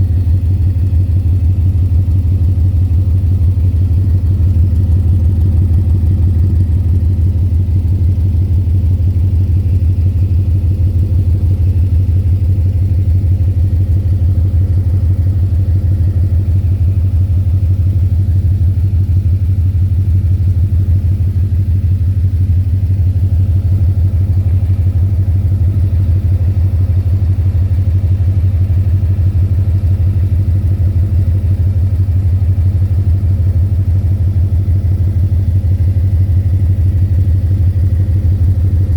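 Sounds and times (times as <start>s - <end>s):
car engine idling with knock: 0.0s - 38.9s.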